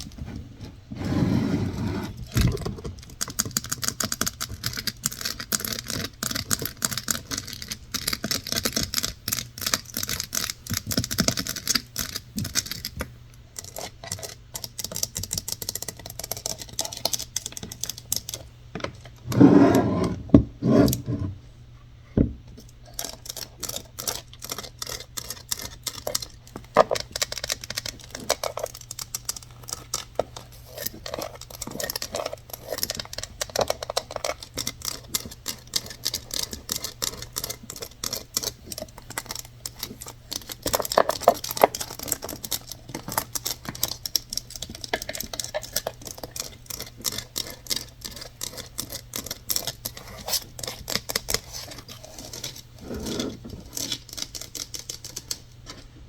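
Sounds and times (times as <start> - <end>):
tapping and scratching on objects: 2.2 - 21.4, 22.2 - 55.9.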